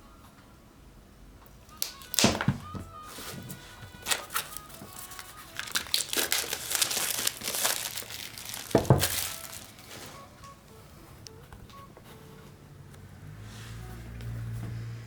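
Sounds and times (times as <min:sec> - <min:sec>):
packaging crinkling: 0:01.7 - 0:02.6, 0:03.3 - 0:10.2.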